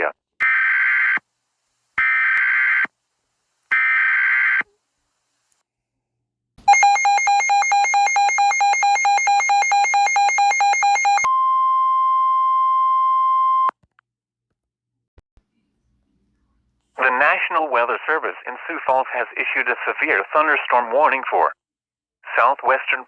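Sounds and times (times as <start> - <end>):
steady warning alarm tone: 6.7 - 11.3.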